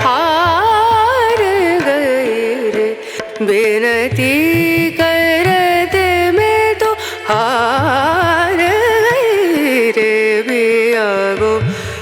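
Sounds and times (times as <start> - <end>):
drum and instrumental accompaniment: 0.0 - 12.0.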